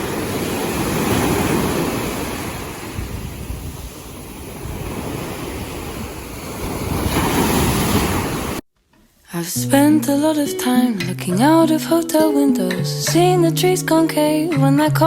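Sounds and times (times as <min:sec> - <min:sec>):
sea waves washing onto shore: 0:00.0 - 0:08.6
wind buffeting microphone: 0:00.0 - 0:08.6.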